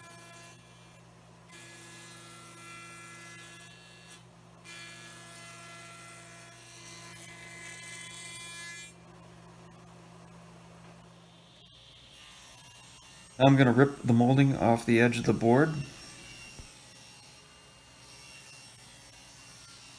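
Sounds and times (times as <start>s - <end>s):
hissing wood cutting: 11.2s - 19.9s
router motor whining: 11.2s - 19.9s.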